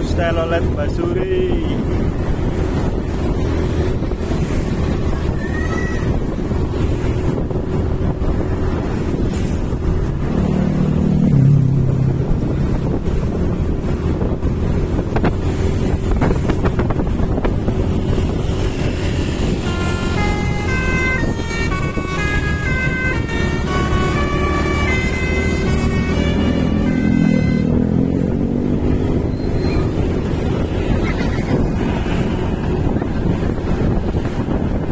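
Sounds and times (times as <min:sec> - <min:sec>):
traffic and engine rumble: 0:00.0 - 0:34.9
wind buffeting microphone: 0:00.0 - 0:34.9
bus musical air horn melody: 0:18.8 - 0:28.3.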